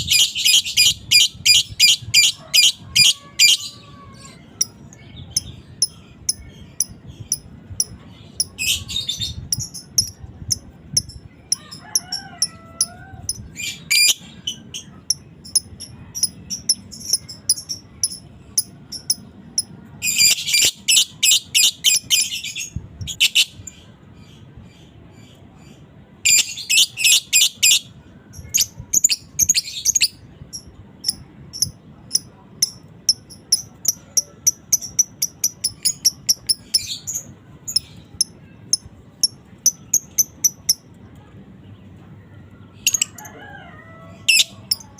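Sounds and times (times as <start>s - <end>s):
lovebird chirping and chattering: 0.0s - 3.8s, 4.6s - 11.6s, 12.4s - 23.9s, 26.3s - 40.9s, 44.3s - 44.9s.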